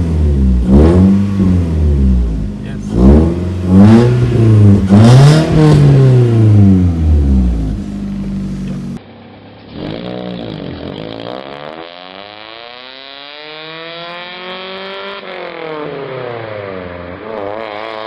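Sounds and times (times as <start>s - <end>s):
car engine revving: 0.0s - 18.0s.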